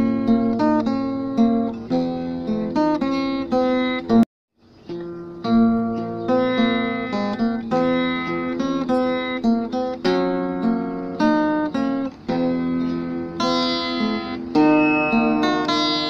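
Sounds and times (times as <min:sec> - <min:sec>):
plucked string music: 0:00.0 - 0:04.2, 0:04.9 - 0:16.0.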